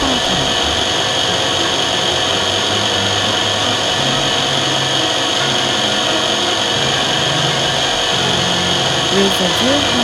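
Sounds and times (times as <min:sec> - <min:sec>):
low machine hum: 0:00.0 - 0:10.0
milling cutter high whine: 0:00.0 - 0:10.0.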